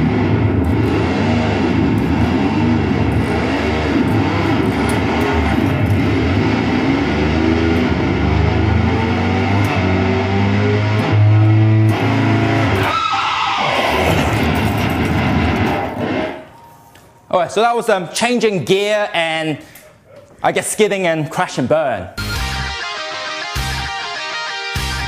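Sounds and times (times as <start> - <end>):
distorted electric guitar: 0.0 - 16.8, 22.2 - 25.0.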